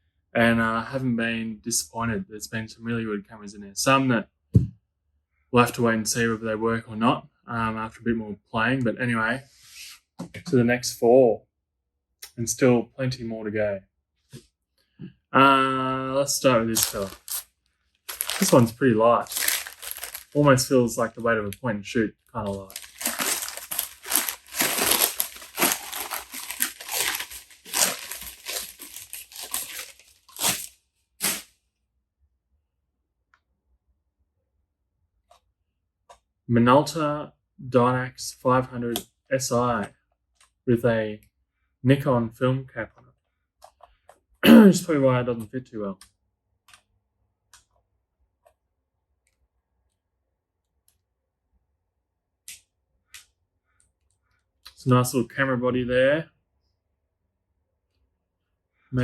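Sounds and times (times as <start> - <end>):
packaging crinkling and tearing: 16.7 - 17.5, 18.1 - 21.6, 22.4 - 31.5.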